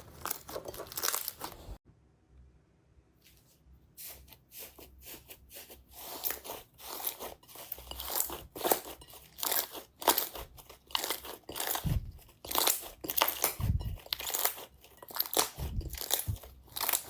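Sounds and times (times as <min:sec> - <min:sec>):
slime crunching crackles: 0:00.0 - 0:01.8, 0:05.6 - 0:17.0.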